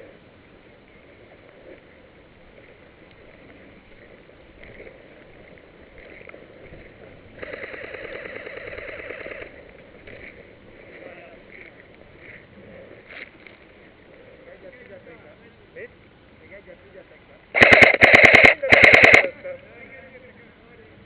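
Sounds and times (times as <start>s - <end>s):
faint background noise: 0.0s - 21.0s
airsoft gun full-auto burst: 7.4s - 9.6s, 17.6s - 19.3s.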